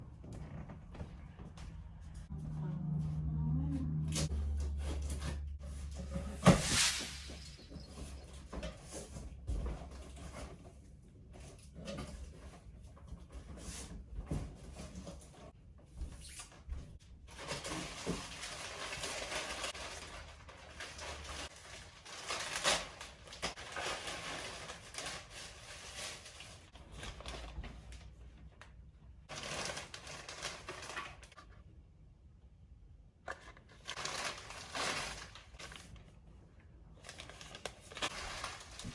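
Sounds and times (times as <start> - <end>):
packaging rustling and scraping: 4.5 - 15.4, 17.3 - 28.2, 29.3 - 31.5, 33.3 - 36.1, 37.0 - 38.9.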